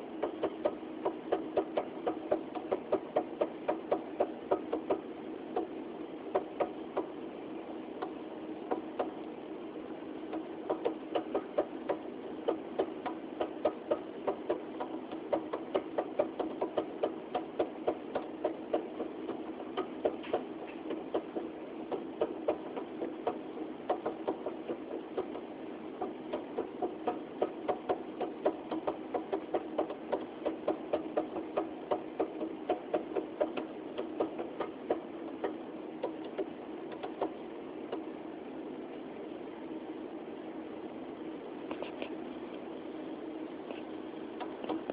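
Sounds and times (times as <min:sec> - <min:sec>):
rapid ticking: 0:00.0 - 0:07.2, 0:10.2 - 0:38.1
refrigerator humming: 0:00.0 - 0:44.9.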